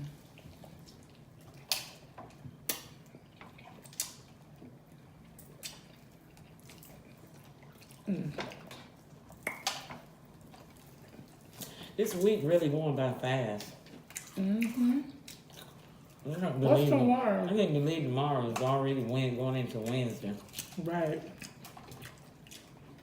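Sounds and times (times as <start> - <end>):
eating clicks and smacks: 0.6 - 10.0.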